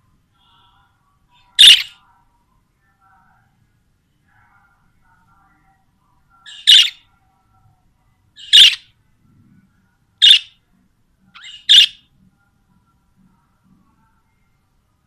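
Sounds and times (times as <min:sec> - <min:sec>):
budgerigars calling: 0:01.6 - 0:01.9, 0:06.5 - 0:07.0, 0:08.4 - 0:08.8, 0:10.2 - 0:10.5, 0:11.4 - 0:12.0.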